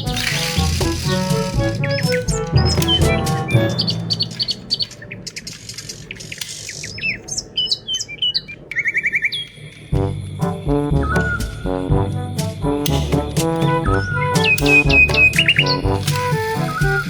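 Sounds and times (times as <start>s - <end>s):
background music: 0.0s - 5.7s, 9.9s - 17.0s.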